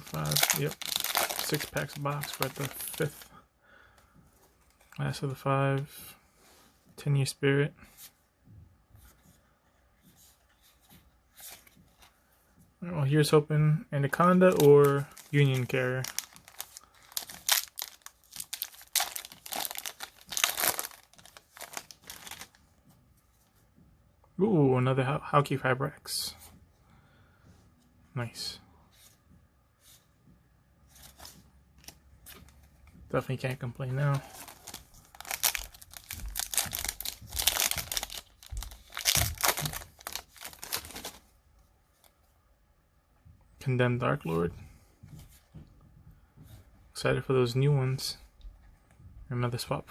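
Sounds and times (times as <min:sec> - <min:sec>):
foil wrapper crinkling and tearing: 0:00.0 - 0:03.2, 0:14.4 - 0:22.5, 0:34.2 - 0:41.2.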